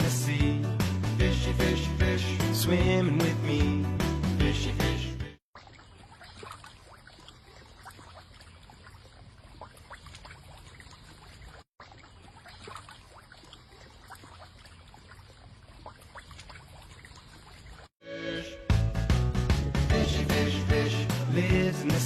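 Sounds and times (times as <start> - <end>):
water trickling and lapping: 5.4 - 18.0
small splashes and drips: 5.5 - 18.0.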